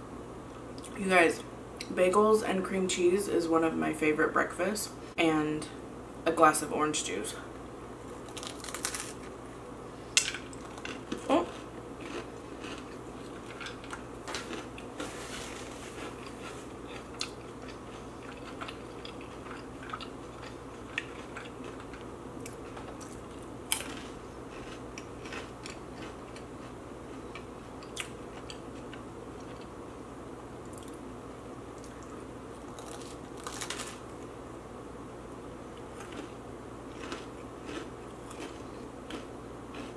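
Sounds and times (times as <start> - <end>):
steady low hum: 0.0 - 39.9
chewing with sharp crunches: 10.2 - 29.8, 35.8 - 39.9.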